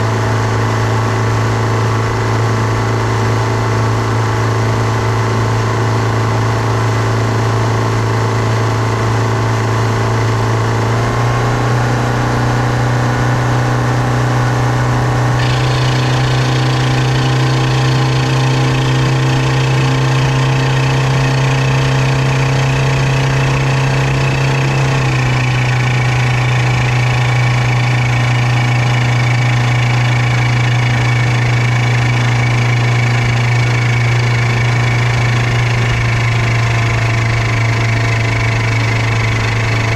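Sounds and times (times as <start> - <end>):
outboard motor running: 0.0 - 39.9.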